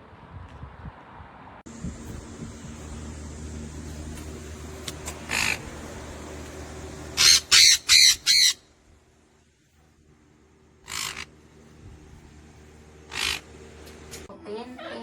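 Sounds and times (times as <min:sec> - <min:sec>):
pet bird squawking: 0:05.3 - 0:05.7, 0:07.2 - 0:08.6, 0:10.8 - 0:11.4, 0:13.1 - 0:13.6.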